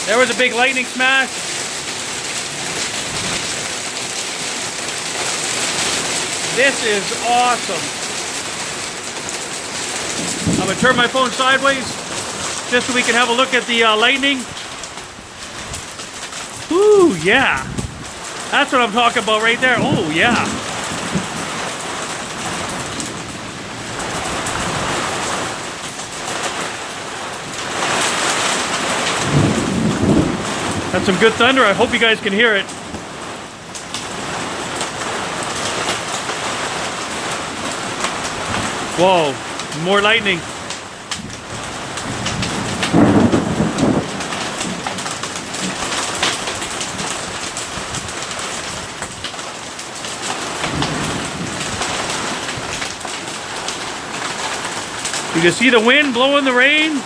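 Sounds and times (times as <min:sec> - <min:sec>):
heavy rain pouring: 0:00.0 - 0:57.0
wind: 0:00.0 - 0:57.0
roll of thunder: 0:09.7 - 0:13.6, 0:16.7 - 0:25.8, 0:27.6 - 0:33.4, 0:41.2 - 0:49.2, 0:50.4 - 0:55.6.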